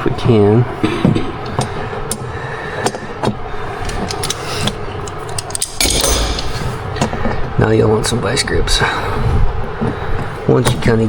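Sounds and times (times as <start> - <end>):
steady background noise: 0.0 - 11.0
metal parts and hand tools clicking: 3.8 - 7.2.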